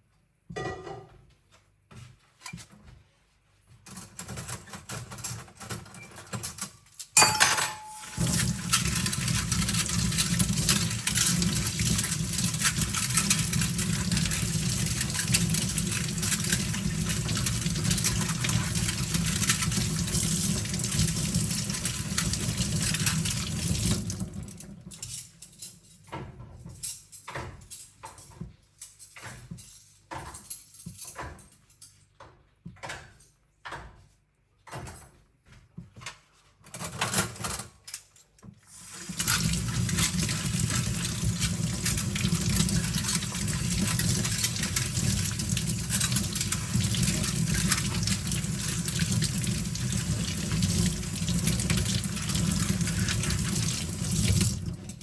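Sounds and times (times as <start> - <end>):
cutlery and dishes clinking: 0.6 - 1.2, 6.1 - 19.9
metal clank with ringing: 7.2 - 8.8.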